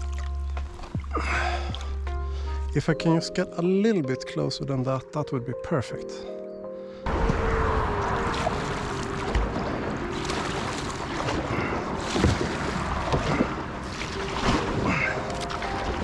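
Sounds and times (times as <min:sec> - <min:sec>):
water splashing and rushing: 0:00.0 - 0:02.6, 0:07.1 - 0:16.0
wind on microphone: 0:07.1 - 0:13.9.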